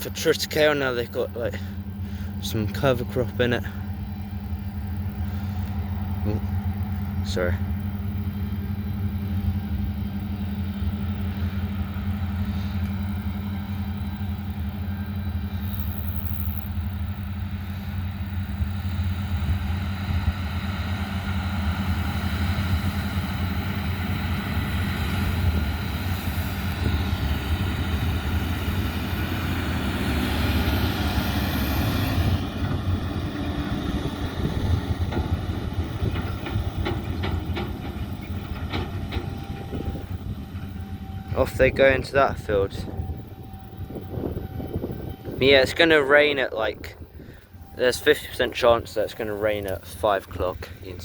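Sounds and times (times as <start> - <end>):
engine low drone: 0.0 - 51.0.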